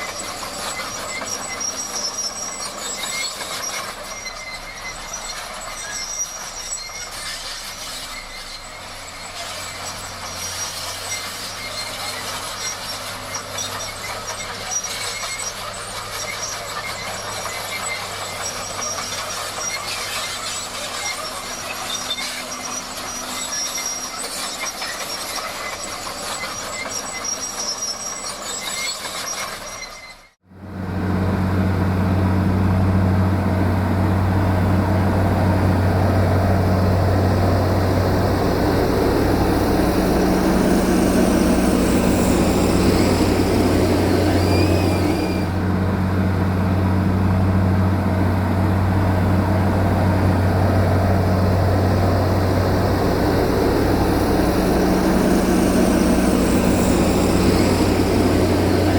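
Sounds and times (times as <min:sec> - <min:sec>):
high machine squeaks: 0:00.0 - 0:30.4, 0:33.5 - 0:58.9
diesel engine droning: 0:30.4 - 0:58.9.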